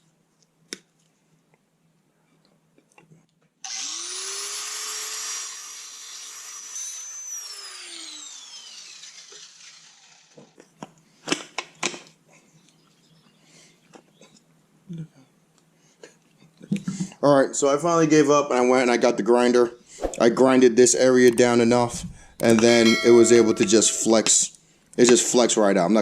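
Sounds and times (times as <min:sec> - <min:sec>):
electric grinder whining: 0:03.6 - 0:10.6.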